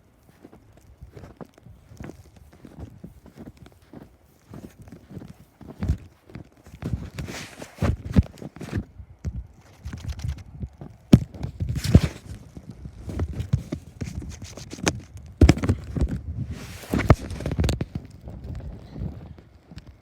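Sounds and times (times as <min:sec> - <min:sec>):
footsteps in snow: 0:00.0 - 0:08.9, 0:10.8 - 0:14.8, 0:15.5 - 0:17.9
wind buffeting microphone: 0:07.8 - 0:20.0.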